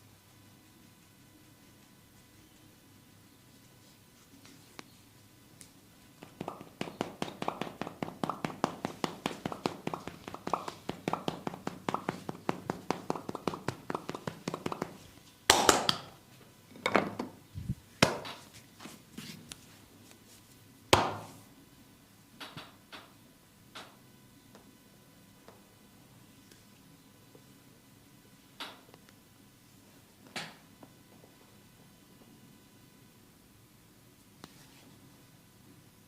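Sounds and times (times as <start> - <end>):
hands chopping and tapping on body: 6.2 - 16.1.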